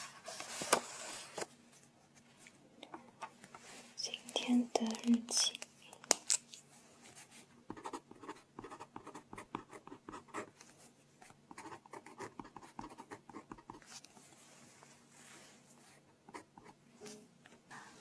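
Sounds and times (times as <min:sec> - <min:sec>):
paper rustling: 0:00.0 - 0:01.5
pen scratching on paper: 0:07.2 - 0:10.6, 0:11.5 - 0:14.0.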